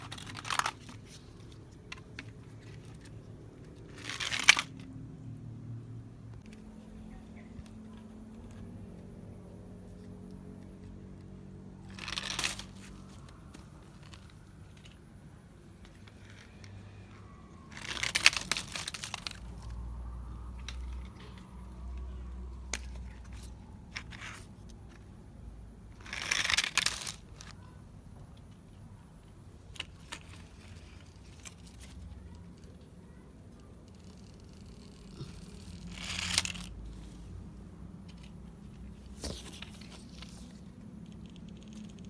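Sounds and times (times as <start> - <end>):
crinkling rustling handling noise: 0.0 - 4.9, 11.8 - 25.2, 33.8 - 42.0.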